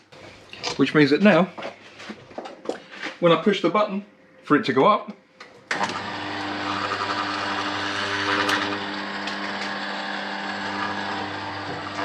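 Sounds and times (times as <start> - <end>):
garage door motor humming: 5.7 - 12.0.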